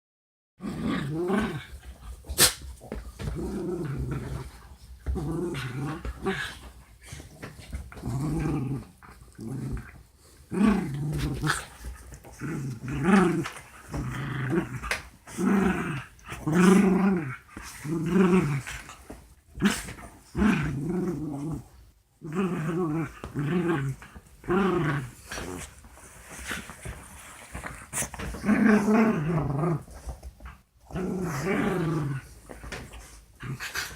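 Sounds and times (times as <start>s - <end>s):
dogs growling: 0.6s - 2.0s, 2.8s - 33.9s.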